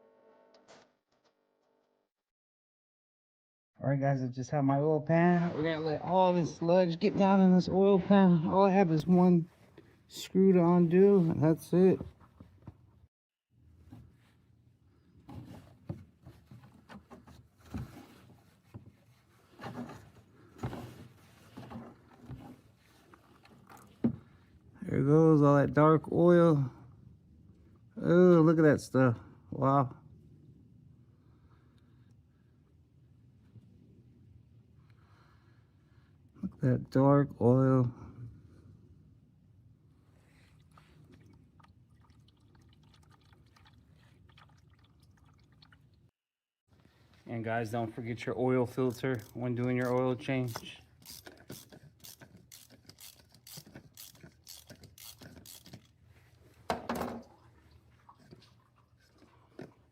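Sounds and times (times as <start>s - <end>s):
small drips: 40.3s - 46.1s
oil trickling into a pan: 40.6s - 46.0s
wrench clicking and scraping: 48.9s - 56.0s.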